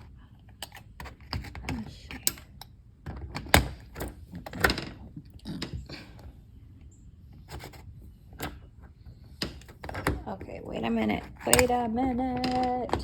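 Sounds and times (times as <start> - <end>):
door knob and latch clicking: 3.1 - 4.9, 11.2 - 11.8.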